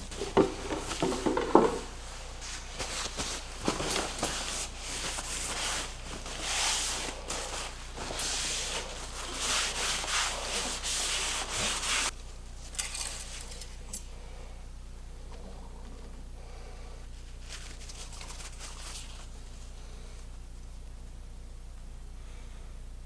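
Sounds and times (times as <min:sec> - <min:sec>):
rubbing swishes on a surface: 0:02.4 - 0:12.1.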